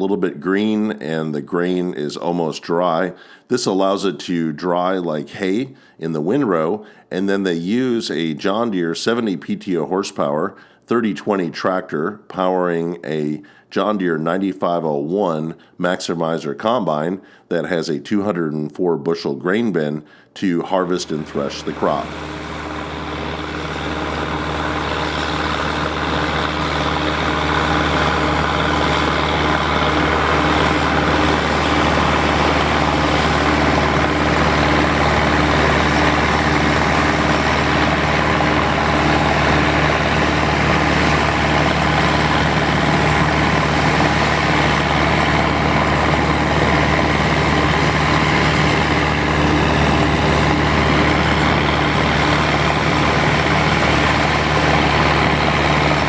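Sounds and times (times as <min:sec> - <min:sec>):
tractor engine running under load: 0:21.0 - 0:56.0.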